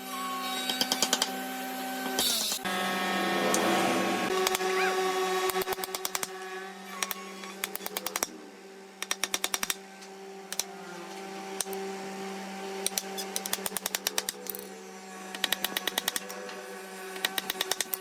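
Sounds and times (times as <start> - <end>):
rapid sharp tool clicks: 5.5 - 6.3, 7.0 - 8.3, 9.0 - 9.8, 12.8 - 14.6, 15.4 - 16.4, 17.2 - 18.0.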